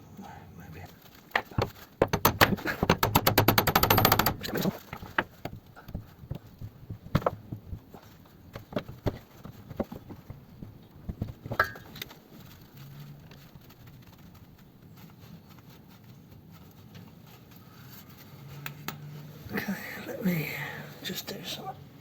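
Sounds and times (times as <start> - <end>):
metal tools clinking and knocking: 1.4 - 5.0.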